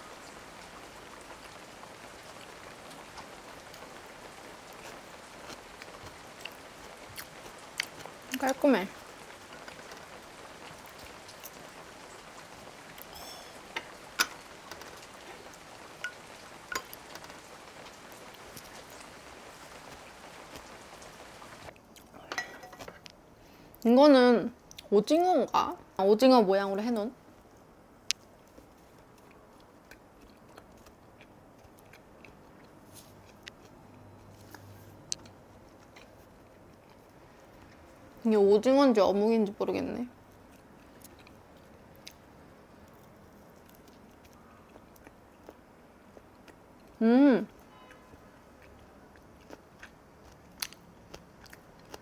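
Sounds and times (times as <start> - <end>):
rain pattering: 0.0 - 21.8, 34.3 - 45.6
person chewing food: 1.2 - 22.3, 27.5 - 38.0, 40.3 - 42.2, 42.8 - 52.0.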